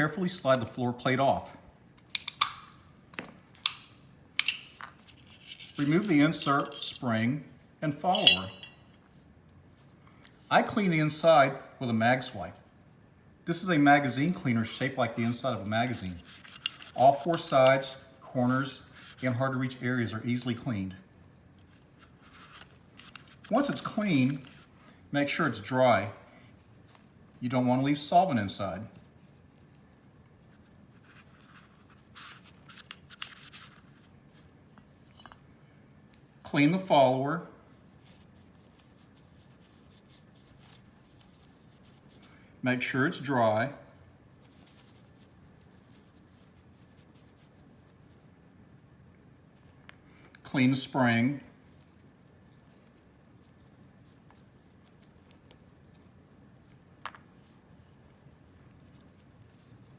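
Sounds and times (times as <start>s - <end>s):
light rubbing of metal spring: 4.4s - 7.1s, 8.0s - 8.9s.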